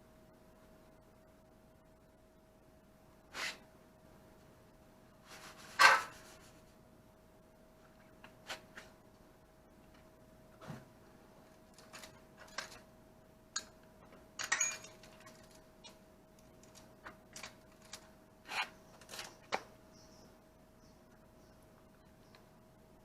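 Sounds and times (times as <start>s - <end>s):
faint steady hum: 0.0s - 23.0s
metal tools clinking: 14.4s - 15.6s.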